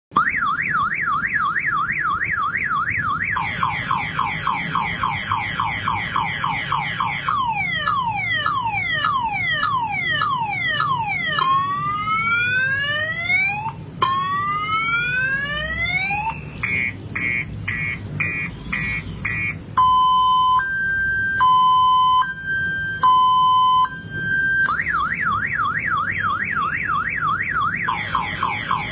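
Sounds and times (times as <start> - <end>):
car alarm siren: 0.1 - 28.9.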